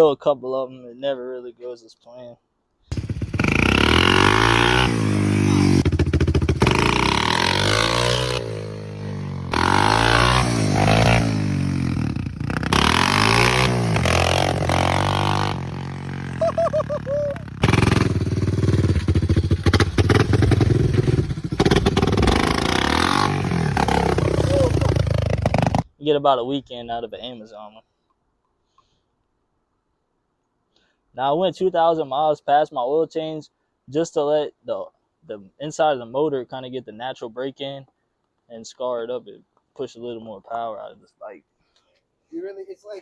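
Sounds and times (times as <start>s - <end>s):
motorcycle engine revving: 2.9s - 25.9s.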